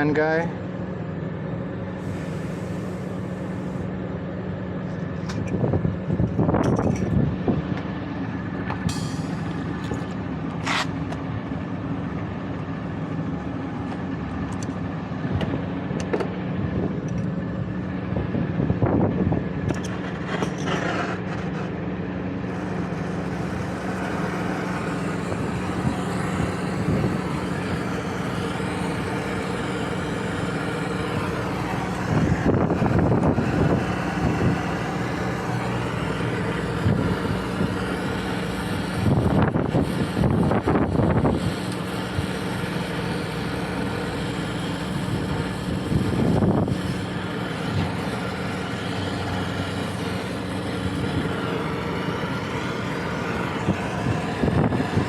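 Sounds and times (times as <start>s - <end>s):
low mechanical hum: 0.0s - 55.0s
brazing torch hissing: 2.0s - 3.9s, 22.5s - 55.0s.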